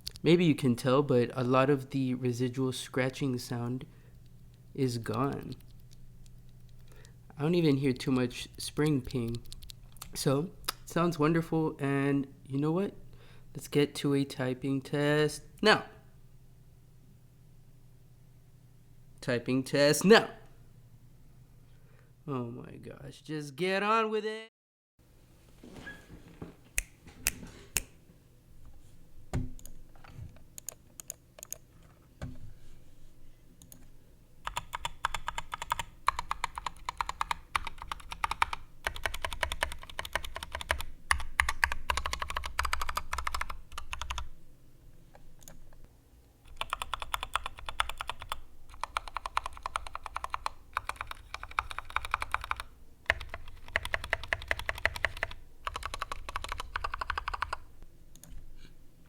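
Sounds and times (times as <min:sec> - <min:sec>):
mechanical keyboard typing: 0:30.6 - 0:31.6, 0:34.5 - 0:44.3, 0:46.5 - 0:57.6.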